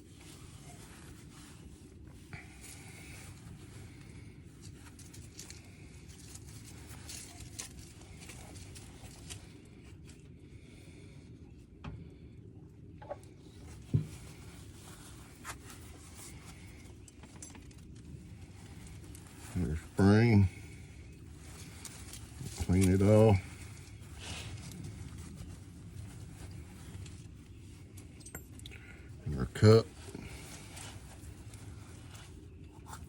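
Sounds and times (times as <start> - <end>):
low steady hum: 0.0 - 33.0
metal parts clicking and rustling: 16.2 - 19.2, 26.9 - 28.8.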